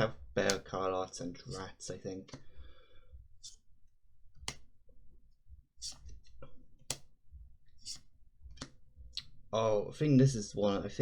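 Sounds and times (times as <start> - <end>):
trading cards clicking and snapping: 4.4 - 4.7, 5.8 - 7.2.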